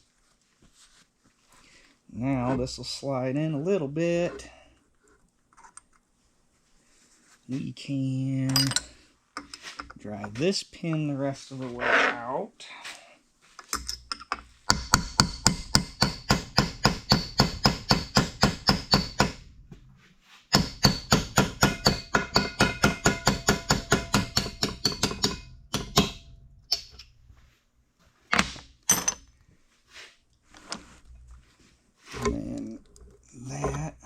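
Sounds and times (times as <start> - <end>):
hammer striking metal: 14.7 - 19.5, 20.5 - 27.0.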